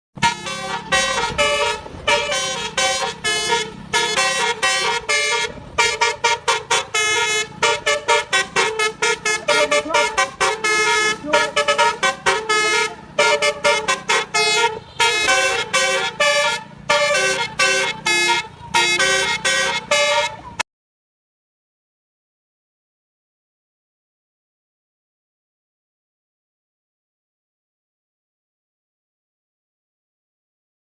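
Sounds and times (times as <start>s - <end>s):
musical air horns playing melody: 0.2s - 20.6s.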